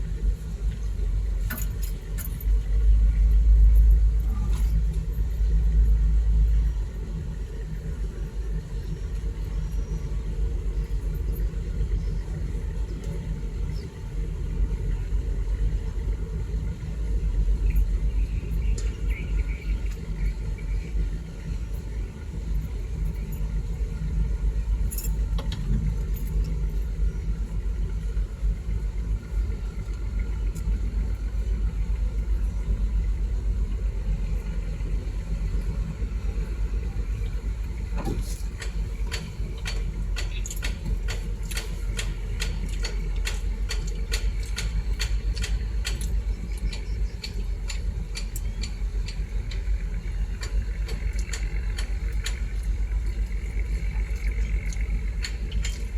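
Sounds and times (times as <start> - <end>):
heavy machinery engine rumbling: 0.0 - 55.9
sharp clicks and ticks: 38.6 - 49.7, 50.4 - 53.4, 54.1 - 55.9.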